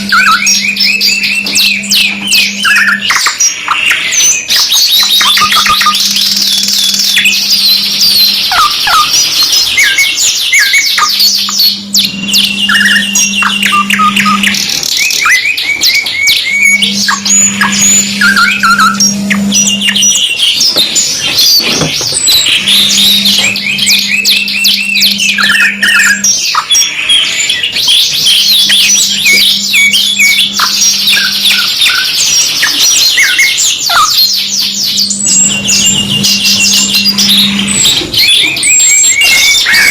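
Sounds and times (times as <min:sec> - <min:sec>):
canaries singing trills: 0:00.0 - 0:39.9
low steady hum: 0:11.0 - 0:15.0, 0:15.8 - 0:31.7, 0:34.7 - 0:39.9.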